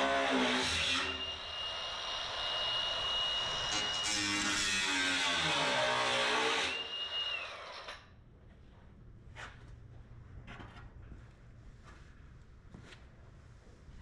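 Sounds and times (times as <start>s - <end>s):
power grinder spinning down: 0.0s - 8.0s.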